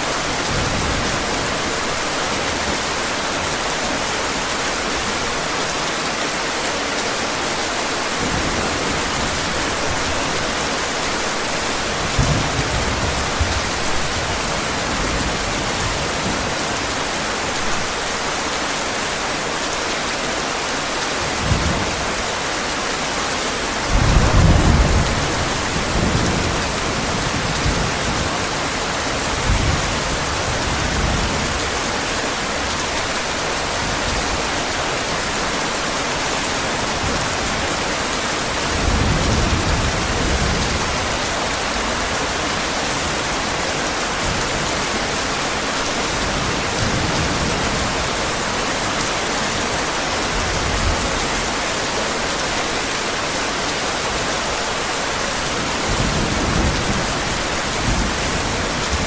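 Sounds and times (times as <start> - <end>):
heavy rain: 0.0 - 59.0
thunder rumbling: 23.9 - 28.6.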